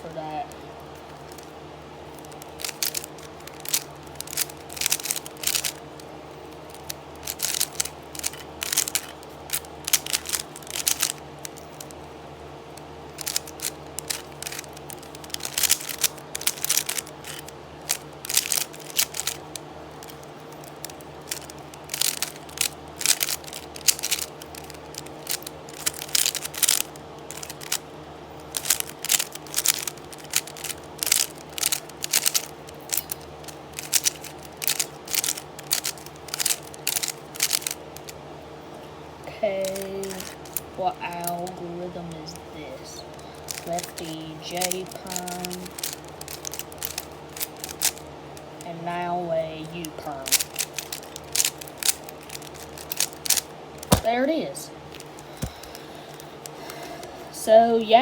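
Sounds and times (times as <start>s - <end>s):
plastic cube clicking turns: 2.2s - 11.9s, 13.1s - 27.8s, 28.5s - 38.1s, 39.7s - 41.4s, 43.4s - 48.0s, 50.2s - 54.2s.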